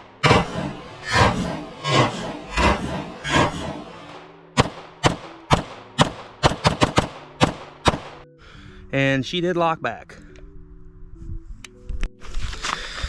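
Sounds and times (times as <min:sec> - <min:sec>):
pistol shots: 0:04.6 - 0:08.2.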